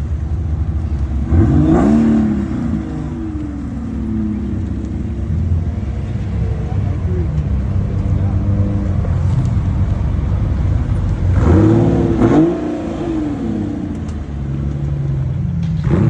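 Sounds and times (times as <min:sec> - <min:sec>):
car engine revving: 0:00.0 - 0:16.0
cars passing: 0:00.0 - 0:16.0.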